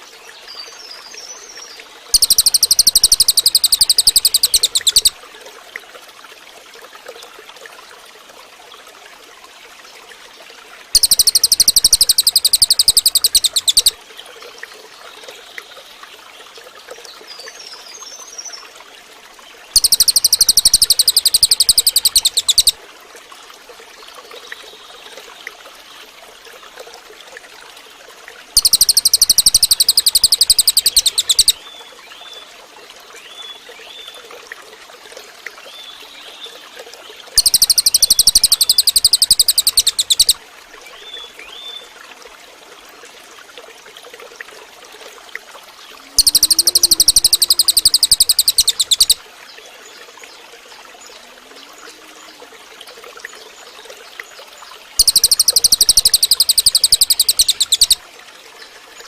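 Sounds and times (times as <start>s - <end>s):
water trickling: 0.0s - 59.0s
faint bird chirps: 0.5s - 5.2s, 11.0s - 14.0s, 19.8s - 22.8s, 28.6s - 31.8s, 37.4s - 40.4s, 45.9s - 49.2s, 55.0s - 58.0s
bird trilling: 2.2s - 5.2s, 11.0s - 14.0s, 19.8s - 22.8s, 28.6s - 31.6s, 37.4s - 40.4s, 46.2s - 49.2s, 55.0s - 58.0s.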